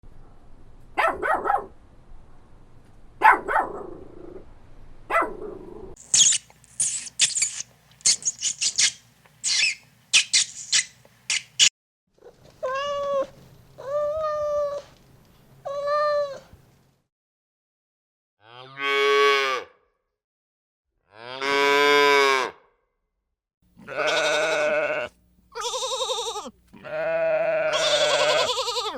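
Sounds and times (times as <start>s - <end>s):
farm animal calls: 6.0s - 11.7s, 23.8s - 28.9s
short high squeaks: 6.0s - 11.7s.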